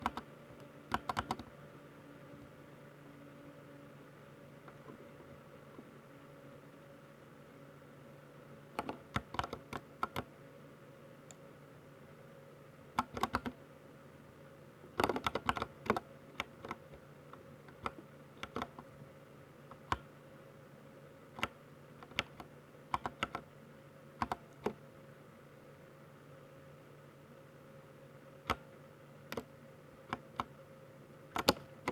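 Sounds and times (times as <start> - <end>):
mechanical keyboard keystrokes: 0.0 - 0.3, 0.9 - 1.5, 8.8 - 10.3, 13.0 - 13.6, 15.0 - 17.0, 17.7 - 18.9, 21.4 - 23.5, 24.2 - 24.8, 28.5 - 28.7, 29.3 - 30.5, 31.3 - 31.9.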